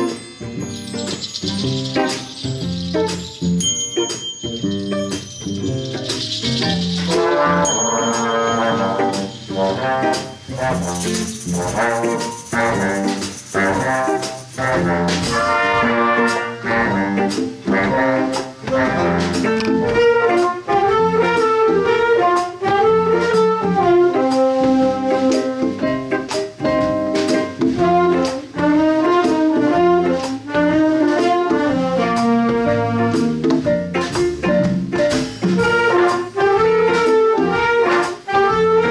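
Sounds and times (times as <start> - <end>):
drum kit steady beat: 0.0 - 38.9
brass section playing: 6.0 - 25.7, 27.8 - 33.4, 35.6 - 38.9.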